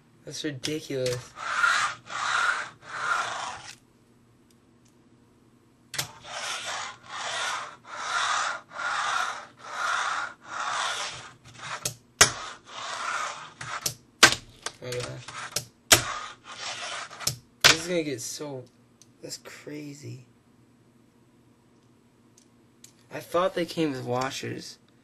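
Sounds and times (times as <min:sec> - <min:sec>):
fingerboard wheels rolling: 0:01.1 - 0:03.8, 0:06.0 - 0:13.9, 0:15.1 - 0:17.3
board clicking on surface: 0:10.7 - 0:17.8.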